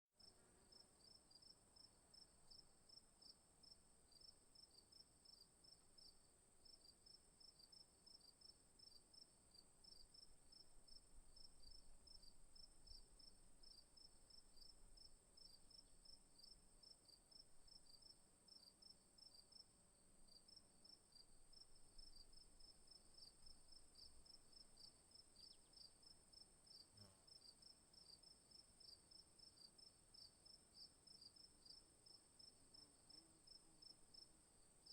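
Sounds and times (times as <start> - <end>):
crickets chirping: 0.2 - 19.7, 20.3 - 34.9.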